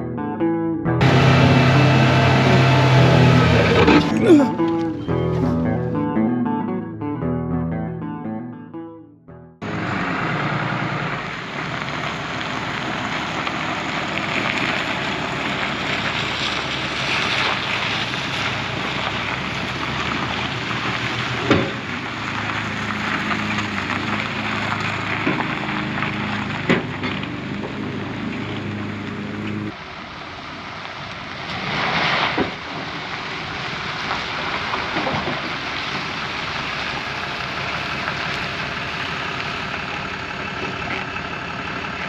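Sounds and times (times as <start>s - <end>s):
motor running: 1.0s - 4.4s.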